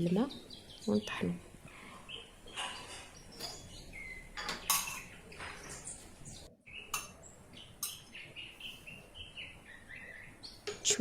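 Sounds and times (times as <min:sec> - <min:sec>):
dishes and utensils clinking: 0:02.5 - 0:06.0, 0:06.9 - 0:08.2.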